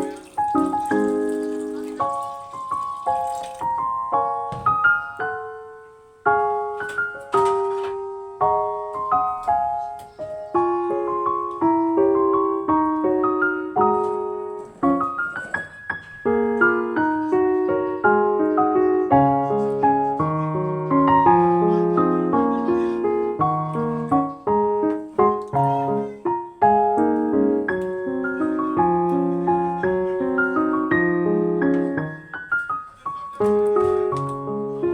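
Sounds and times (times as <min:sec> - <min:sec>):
piano music: 0:00.0 - 0:34.9.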